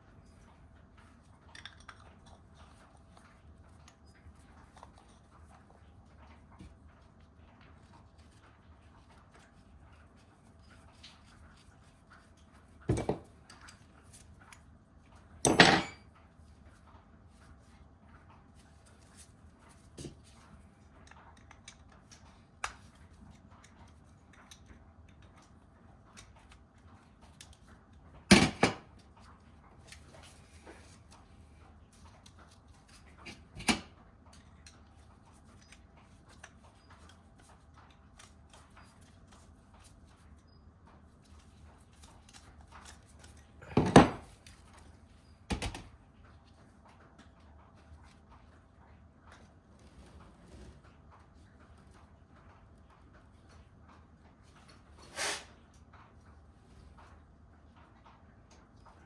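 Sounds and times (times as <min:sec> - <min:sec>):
metal tools clicking and tapping: 0:12.3 - 0:16.3, 0:21.0 - 0:26.6.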